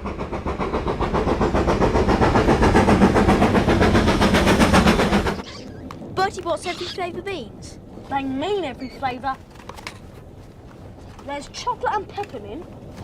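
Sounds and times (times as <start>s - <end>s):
steam train chugging: 0.0s - 5.4s.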